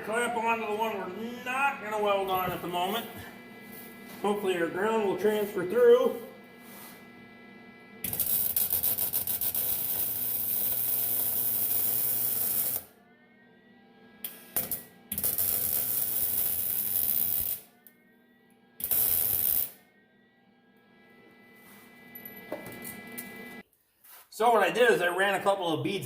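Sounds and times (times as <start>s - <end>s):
welding arc crackling: 8.0s - 12.9s, 14.3s - 17.7s, 18.8s - 19.8s.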